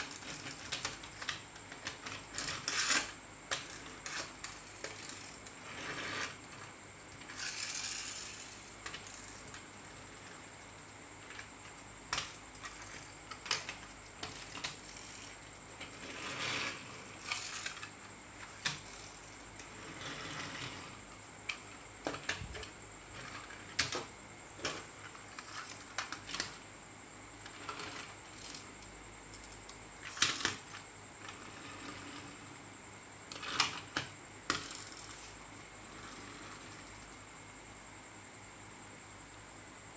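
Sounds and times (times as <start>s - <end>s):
faint high-pitched whine: 0.0s - 39.9s.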